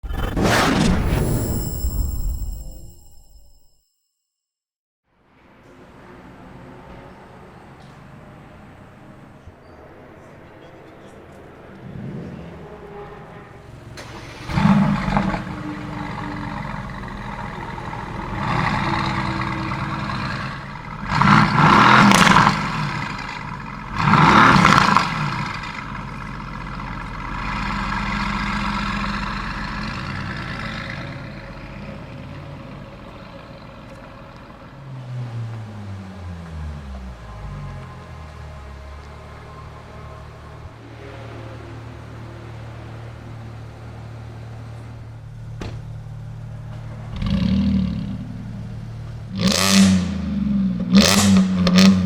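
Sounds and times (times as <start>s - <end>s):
car engine revving: 11.0s - 52.0s.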